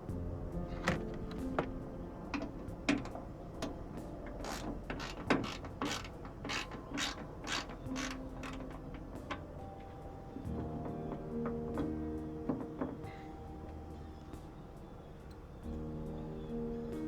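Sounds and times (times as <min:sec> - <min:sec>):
socket ratchet clicking: 0:04.4 - 0:09.4.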